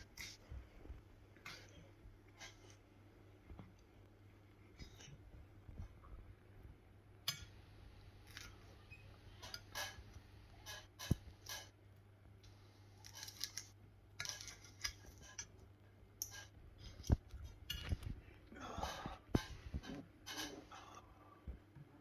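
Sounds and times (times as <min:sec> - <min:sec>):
cutlery scraping on a plate: 0:10.6 - 0:11.8, 0:19.4 - 0:20.7.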